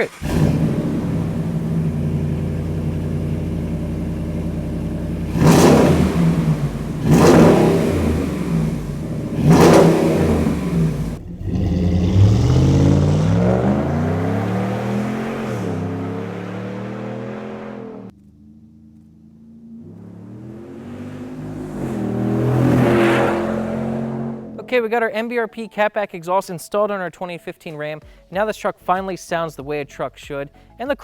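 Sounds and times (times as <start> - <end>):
engine idling and revving: 0.0 - 24.7.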